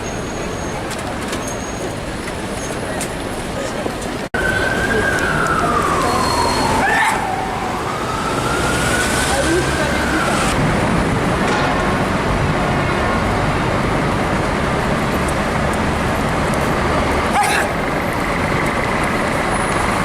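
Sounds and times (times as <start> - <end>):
city street traffic: 0.0 - 20.0.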